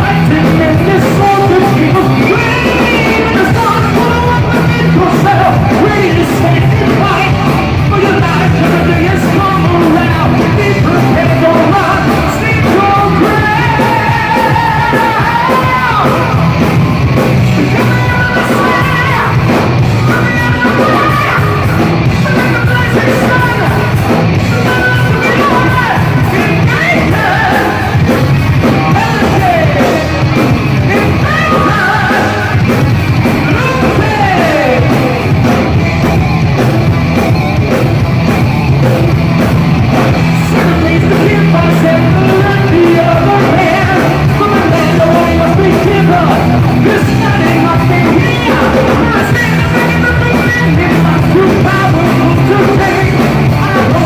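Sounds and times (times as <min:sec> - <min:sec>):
live rock band playing: 0:00.0 - 0:54.0
singer belting: 0:00.0 - 0:54.0.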